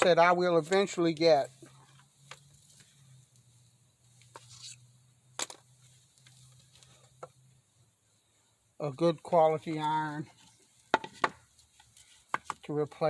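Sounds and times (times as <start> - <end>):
small clicks and rustles: 0.6 - 4.8, 5.4 - 7.4, 9.7 - 12.8.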